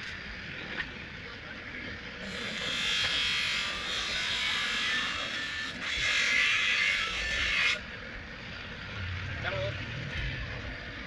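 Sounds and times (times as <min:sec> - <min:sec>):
small electric sanding tool: 0:02.2 - 0:07.8.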